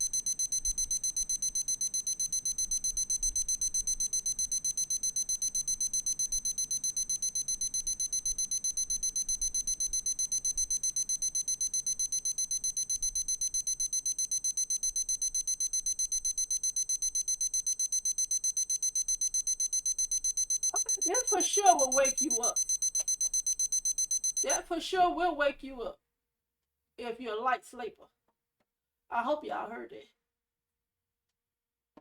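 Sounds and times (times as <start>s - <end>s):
alarm clock beeping: 0.0s - 24.7s.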